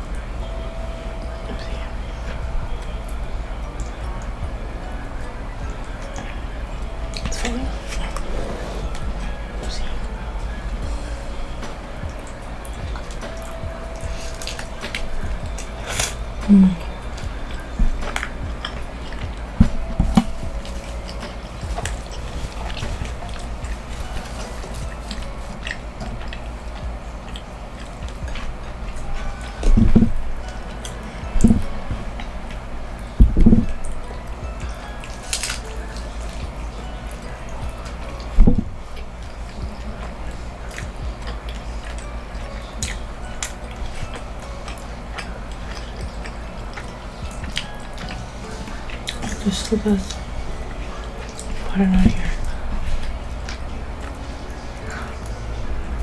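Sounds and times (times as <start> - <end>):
soft thumps: 0.0 - 27.0, 31.2 - 34.8
low steady hum: 0.0 - 56.0
mouth chewing food: 0.0 - 56.0.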